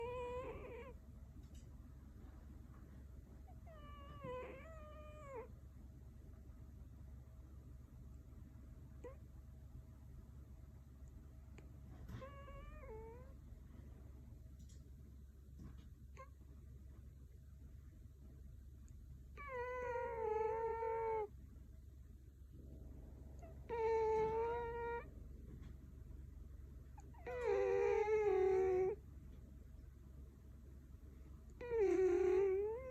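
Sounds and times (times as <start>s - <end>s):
cat snoring with whistling tone: 27.2s - 28.9s, 31.6s - 32.9s.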